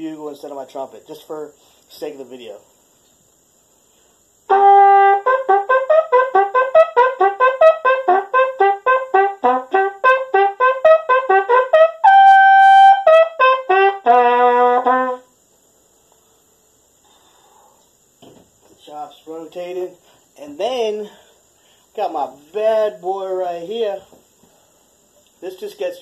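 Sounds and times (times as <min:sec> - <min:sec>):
bugle playing short notes: 0:04.5 - 0:15.3.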